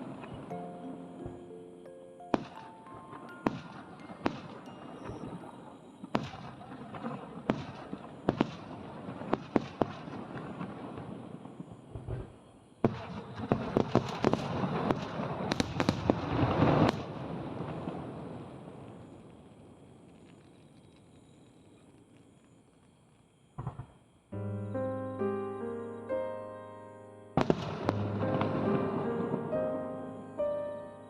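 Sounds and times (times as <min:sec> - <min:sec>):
fireworks crackling: 0:02.2 - 0:24.1, 0:27.4 - 0:30.5
fireworks bangs and booms: 0:02.3 - 0:20.7, 0:23.5 - 0:24.2, 0:27.4 - 0:30.0.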